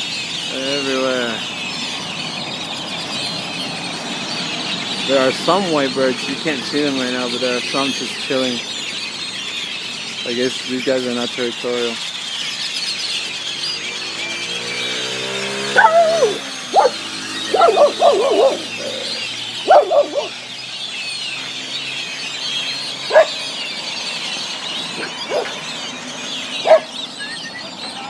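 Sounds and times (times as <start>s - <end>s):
flock of birds chattering: 0.0s - 28.0s
loud short bird calls: 15.4s - 20.4s, 24.8s - 28.0s.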